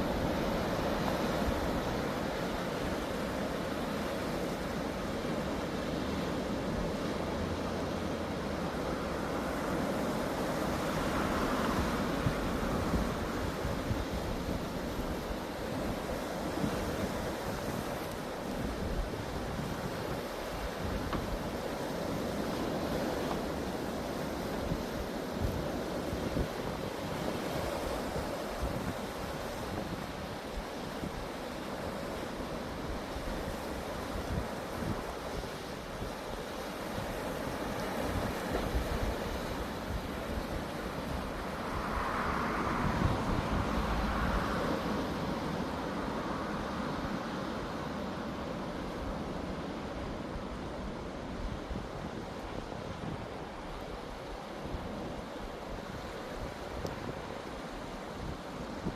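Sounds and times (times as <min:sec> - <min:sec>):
sea surf washing ashore: 0:00.0 - 0:58.9
wind buffeting microphone: 0:08.9 - 0:45.9.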